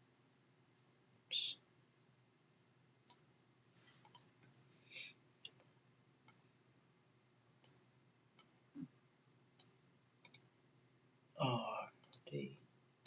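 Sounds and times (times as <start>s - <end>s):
computer mouse clicking: 4.0s - 4.7s, 9.6s - 10.5s, 12.0s - 12.2s.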